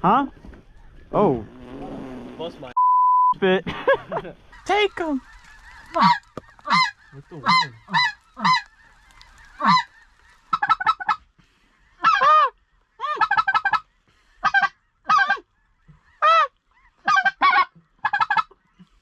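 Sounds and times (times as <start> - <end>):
goose honking and clucking: 4.4 - 18.7.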